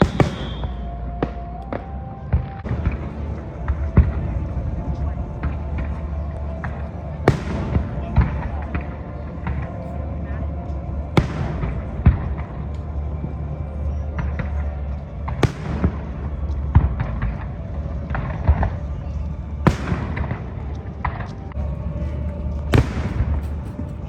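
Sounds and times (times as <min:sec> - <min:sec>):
fireworks shells bursting: 0:00.0 - 0:00.8
crowd chatter: 0:00.0 - 0:24.0.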